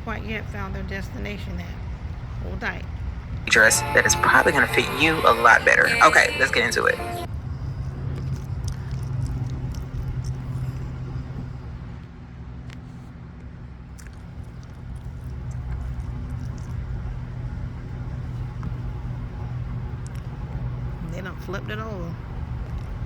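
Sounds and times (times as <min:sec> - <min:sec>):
low mechanical motor hum: 0:03.5 - 0:12.0.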